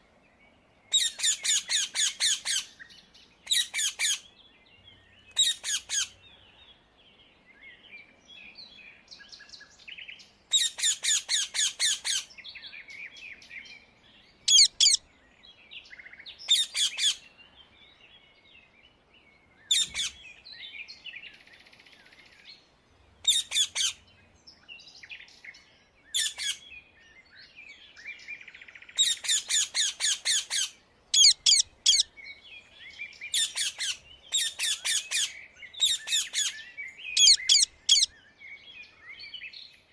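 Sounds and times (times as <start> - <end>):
parakeet high-pitched calls: 0.9 - 2.8, 3.5 - 4.2, 5.4 - 6.2, 10.5 - 12.3, 14.5 - 15.0, 16.5 - 17.2, 19.7 - 20.2, 23.2 - 24.0, 26.2 - 26.6, 29.0 - 32.1, 33.3 - 36.6, 37.2 - 38.1
parakeet soft chattering: 14.5 - 15.0, 31.2 - 32.0, 37.2 - 38.1.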